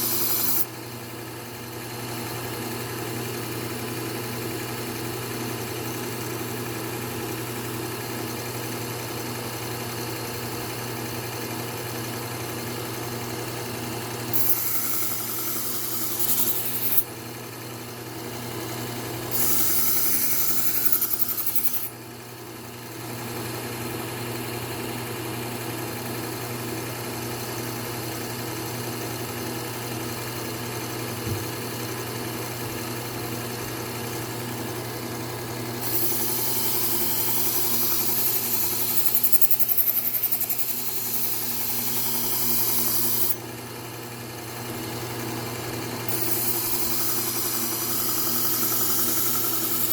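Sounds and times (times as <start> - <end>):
knife grinding on abrasive belt: 0.0 - 0.7, 14.3 - 17.1, 19.3 - 21.9, 35.8 - 43.4, 46.1 - 49.9
motor hum: 14.3 - 17.3.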